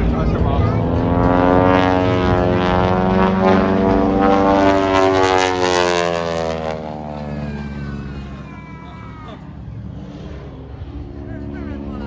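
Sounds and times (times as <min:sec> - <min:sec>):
propeller airplane flying past: 0:00.0 - 0:12.0.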